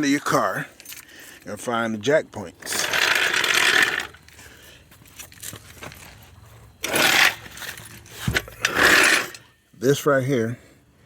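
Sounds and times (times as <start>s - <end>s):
rustling scraping noise: 5.0s - 9.5s.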